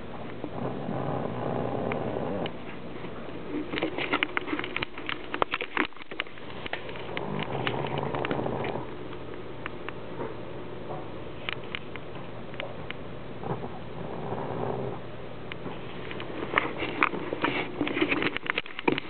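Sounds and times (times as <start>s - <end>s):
dog snoring: 0.4s - 2.7s, 7.0s - 8.9s, 13.4s - 15.1s.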